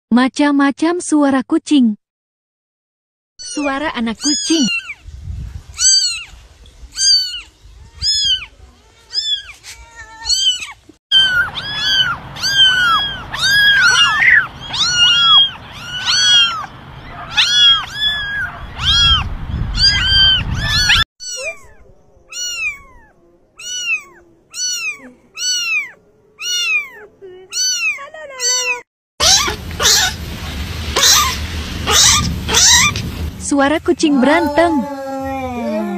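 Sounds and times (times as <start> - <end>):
kittens mewing: 3.4 - 5.0, 7.0 - 30.2, 31.0 - 33.1, 34.0 - 35.9
loud noisy stretch: 29.2 - 33.5.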